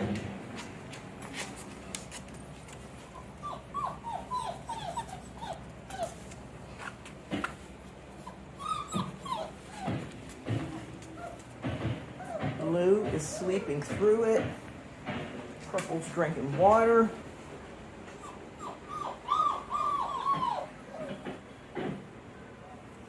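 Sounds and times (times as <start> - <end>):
puppies whimpering: 3.0 - 6.4, 8.1 - 14.4, 18.1 - 21.5
sharp knocks: 11.6 - 13.2.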